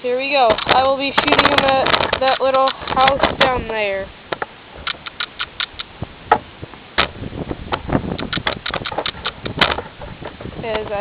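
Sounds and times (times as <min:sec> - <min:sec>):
airsoft gun clicks and pops: 0:00.5 - 0:03.5, 0:04.3 - 0:06.4, 0:07.7 - 0:09.8.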